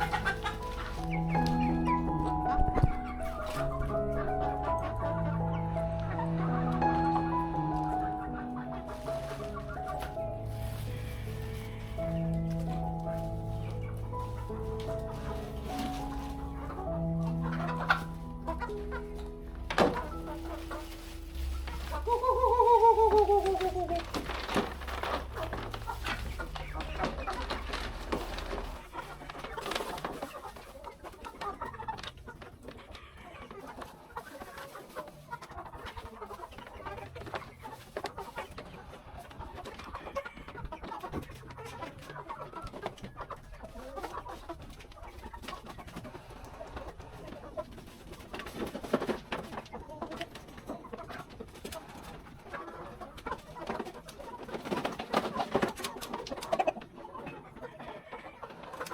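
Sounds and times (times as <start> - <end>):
chickens clucking: 0.0 - 58.9
farmyard birds calling: 0.0 - 58.9
low rumble: 0.6 - 29.0.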